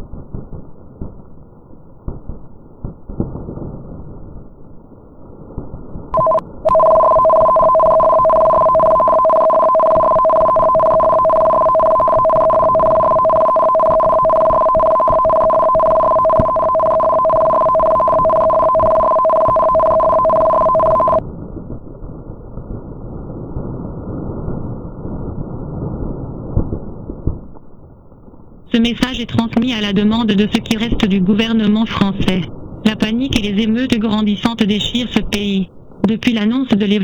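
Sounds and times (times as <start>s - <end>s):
two-tone alert signal: 6.2s - 21.2s.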